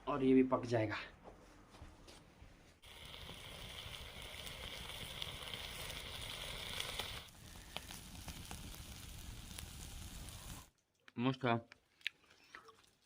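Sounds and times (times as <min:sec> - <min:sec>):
fire pops and crackles: 0:02.8 - 0:10.7
food sizzling over fire: 0:02.8 - 0:10.7.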